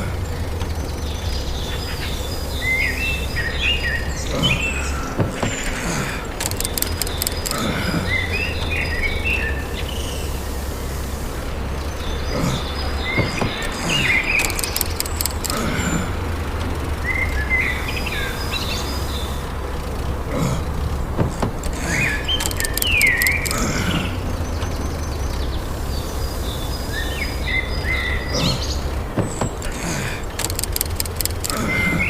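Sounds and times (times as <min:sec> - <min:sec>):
birds chirping: 0:00.0 - 0:32.0
rapid clicks: 0:04.9 - 0:07.9, 0:13.0 - 0:17.1, 0:19.4 - 0:24.0, 0:28.9 - 0:32.0.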